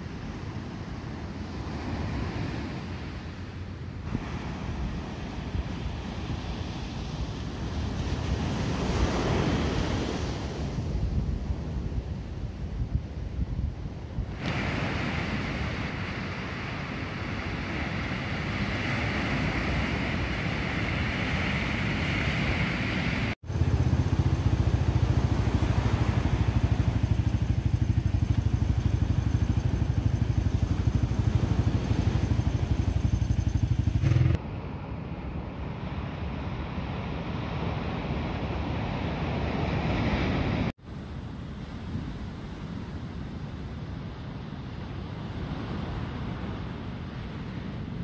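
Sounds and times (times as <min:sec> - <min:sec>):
wind on microphone: 0:00.0 - 0:34.4
ocean surf washing: 0:00.0 - 0:40.7
steady low rumble: 0:23.4 - 0:34.8.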